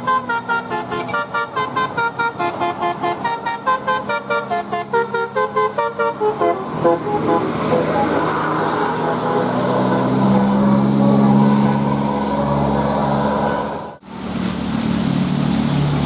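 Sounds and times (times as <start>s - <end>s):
musical bus horn tune: 0.0s - 11.8s
road noise: 0.0s - 16.0s
vehicle engine: 0.0s - 16.0s.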